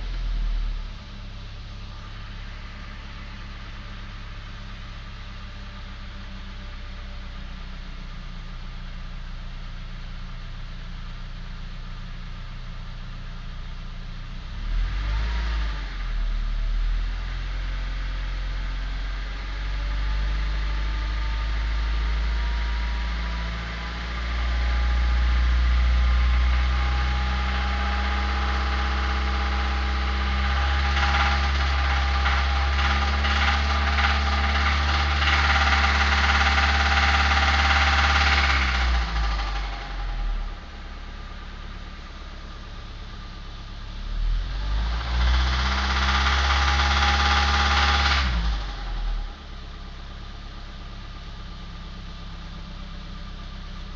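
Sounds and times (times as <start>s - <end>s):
car engine starting and running: 0.0s - 53.9s
rhythmic engine knock: 27.3s - 41.0s, 45.0s - 49.4s.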